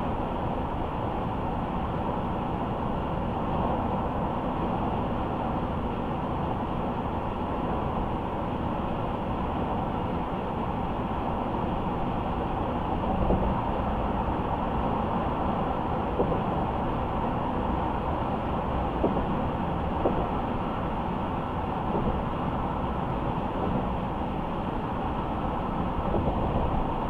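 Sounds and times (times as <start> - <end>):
car road noise: 0.0 - 27.0
car bump: 19.0 - 19.4, 20.0 - 20.4, 21.9 - 22.3.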